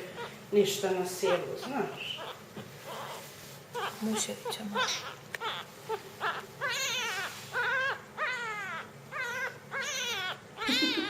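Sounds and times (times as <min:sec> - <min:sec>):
kitten mewling: 0:06.2 - 0:11.0.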